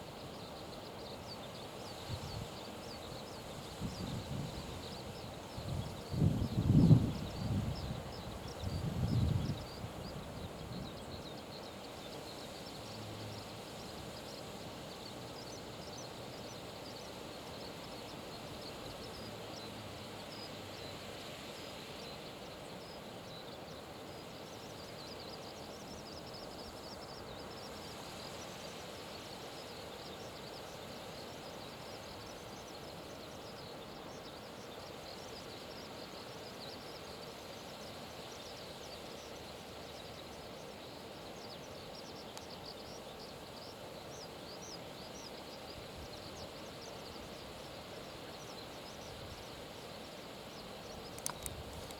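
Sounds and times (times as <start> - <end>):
wind: 0.0 - 51.9
faint high ticks: 42.2 - 42.6, 50.9 - 51.9.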